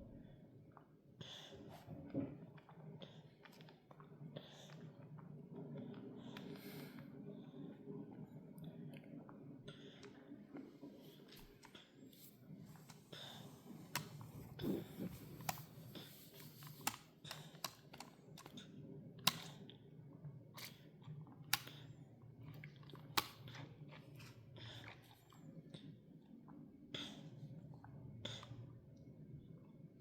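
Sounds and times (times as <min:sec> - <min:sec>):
faint low hum: 0:00.0 - 0:30.0
toddler sucking and swallowing: 0:11.6 - 0:16.9.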